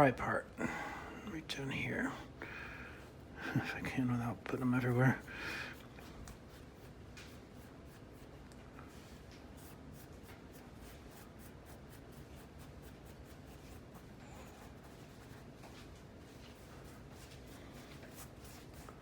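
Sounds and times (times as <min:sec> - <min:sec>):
scratching on paper towel: 0:05.7 - 0:19.0.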